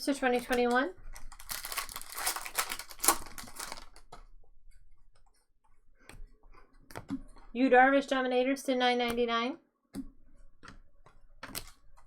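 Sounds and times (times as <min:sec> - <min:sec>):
trading cards rustling and clicking: 0:00.3 - 0:04.3, 0:10.6 - 0:12.0.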